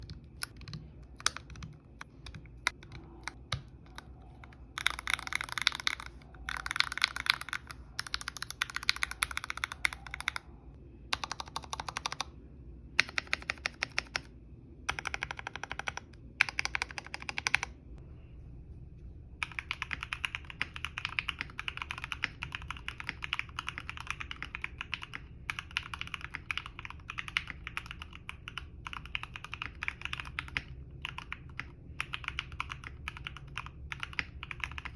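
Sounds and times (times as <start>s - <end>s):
mechanical keyboard typing: 0.0s - 10.4s, 11.1s - 12.3s, 13.0s - 14.3s, 14.9s - 17.7s, 19.4s - 34.9s.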